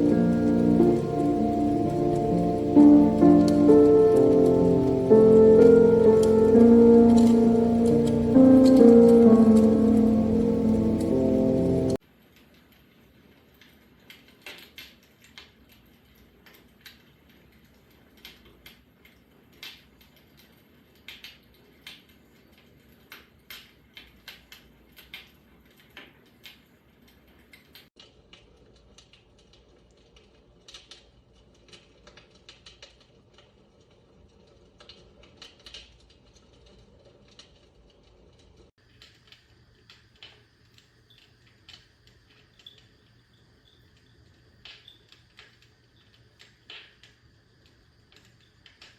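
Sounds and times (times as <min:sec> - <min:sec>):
low hiss: 0:00.0 - 0:12.0
recorded fire crackle through speaker: 0:00.0 - 0:48.9.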